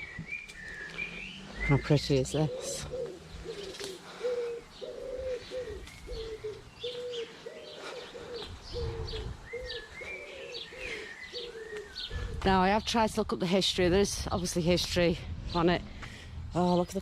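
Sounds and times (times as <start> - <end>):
pigeons cooing: 0.0 - 12.6
small birds chirping: 0.0 - 17.0.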